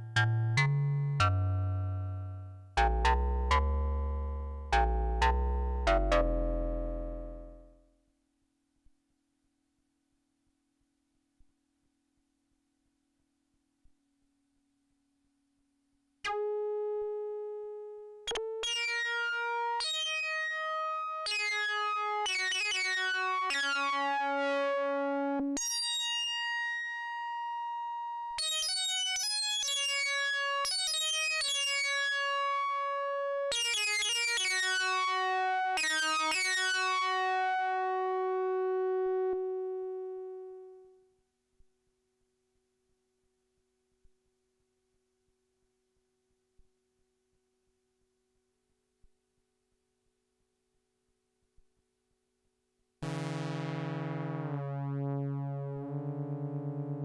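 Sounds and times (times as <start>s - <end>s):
synthesizer held notes: 53.0s - 57.0s.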